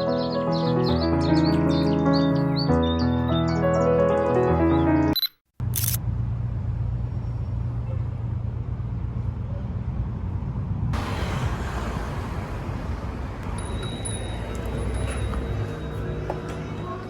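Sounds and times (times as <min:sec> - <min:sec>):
road traffic rumble: 0:05.6 - 0:17.0.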